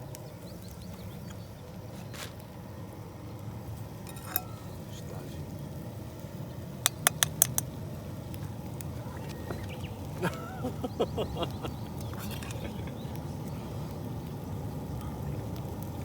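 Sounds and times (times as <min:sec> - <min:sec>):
low outdoor rumble: 0:00.0 - 0:16.0
utensils clinking on cookware: 0:04.0 - 0:04.6, 0:06.9 - 0:07.7, 0:12.1 - 0:12.7.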